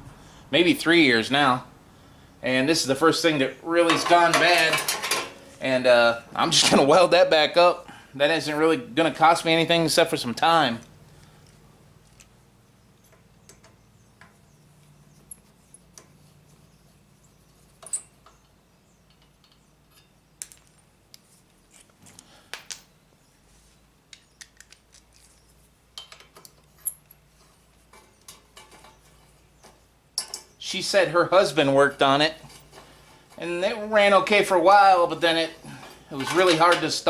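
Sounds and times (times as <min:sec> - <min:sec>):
tools clicking and tapping on metal: 0:03.9 - 0:05.5, 0:13.0 - 0:16.2, 0:17.7 - 0:21.9, 0:24.1 - 0:30.6, 0:35.7 - 0:37.0.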